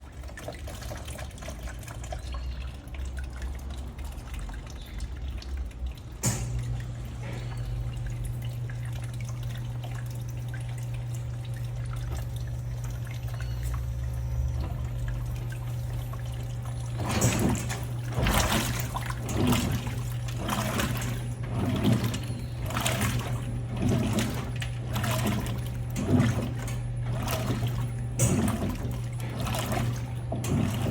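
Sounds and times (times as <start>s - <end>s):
washing machine low hum: 0.0s - 30.9s
water running into washing machine: 0.0s - 30.9s
water splashing: 0.0s - 30.9s
washing machine click: 6.2s - 8.4s, 14.6s - 30.9s.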